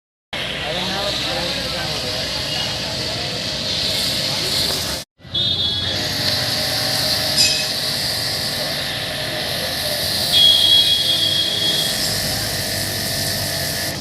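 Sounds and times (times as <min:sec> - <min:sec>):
pressure washer spraying: 0:00.7 - 0:05.0, 0:06.0 - 0:14.0
high squealing whine: 0:05.6 - 0:14.0.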